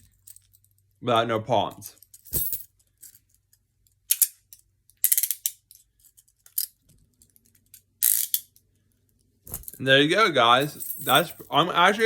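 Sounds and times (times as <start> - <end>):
handcuffs clicking and ratcheting: 4.1 - 8.6.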